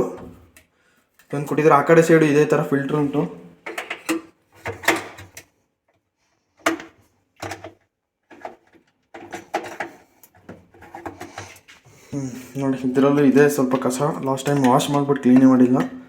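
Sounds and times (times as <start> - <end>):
plastic filter clicks and rattles: 3.6 - 5.5, 13.7 - 16.0.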